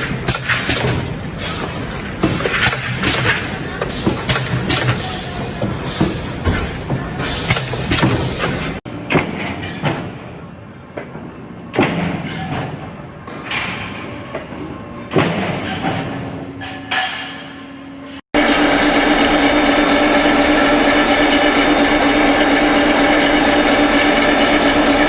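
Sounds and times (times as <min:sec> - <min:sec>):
machinery working: 0:08.9 - 0:25.0.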